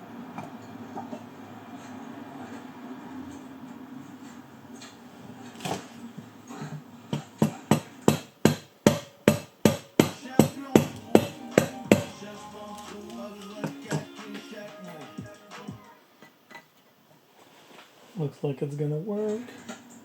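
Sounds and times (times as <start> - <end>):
hammer tapping metal: 7.1 - 12.2
background music: 10.0 - 16.2.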